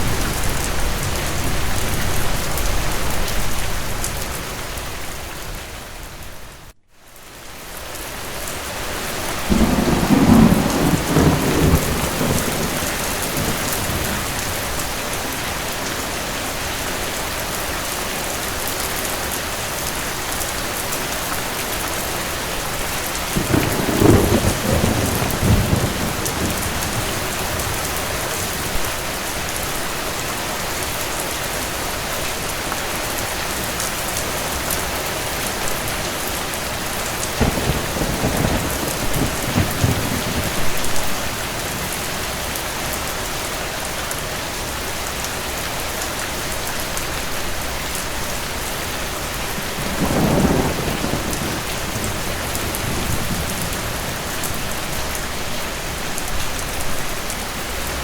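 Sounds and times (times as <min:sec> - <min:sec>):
steady rain: 0:00.0 - 0:58.0
thunder rolling: 0:09.5 - 0:15.1, 0:23.3 - 0:29.0, 0:37.3 - 0:41.9, 0:49.2 - 0:55.9.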